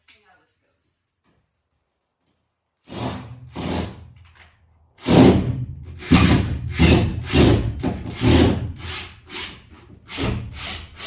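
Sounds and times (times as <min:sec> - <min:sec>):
power drill whirring: 0:02.9 - 0:11.0.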